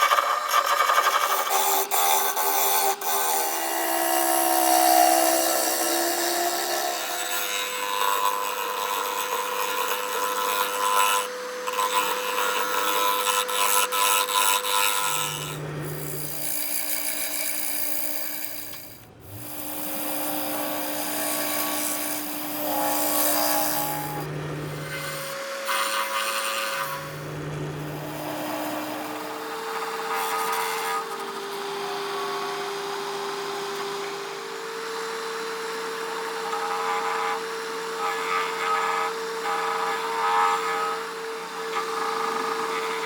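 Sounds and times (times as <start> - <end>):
turning tool scraping wood: 0.0 - 3.4, 4.1 - 31.8
lathe motor hum: 3.8 - 38.8.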